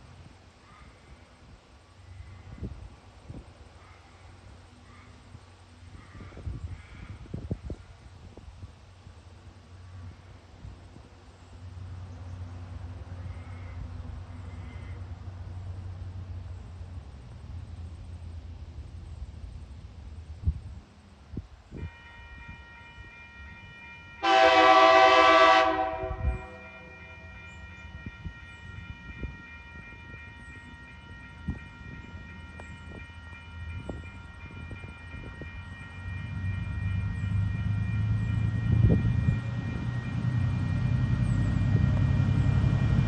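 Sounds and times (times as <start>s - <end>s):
low locomotive engine rumble: 0.0s - 43.0s
locomotive horn: 21.7s - 43.0s
crossing warning signal ringing: 21.8s - 43.0s.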